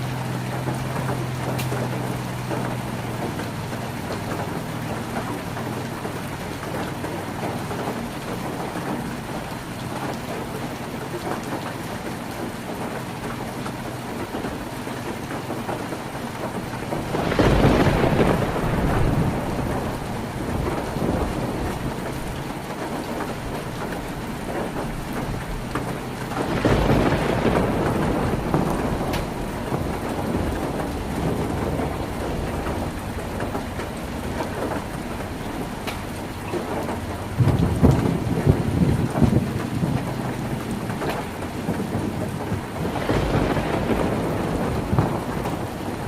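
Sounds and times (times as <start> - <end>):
heavy rain on a tin roof: 0.0 - 46.0.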